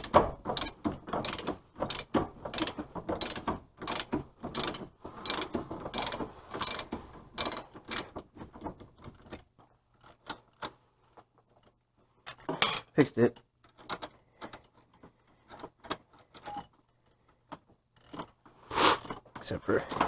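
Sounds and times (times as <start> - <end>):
ratchet wrench clicking: 0.6 - 8.1.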